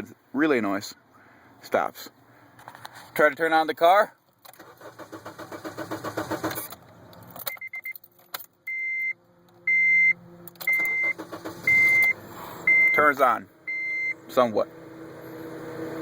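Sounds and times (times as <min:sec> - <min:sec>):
car engine cranking and starting: 0:04.4 - 0:08.6, 0:09.4 - 0:16.0
high electronic beep: 0:08.7 - 0:13.1, 0:13.7 - 0:14.2.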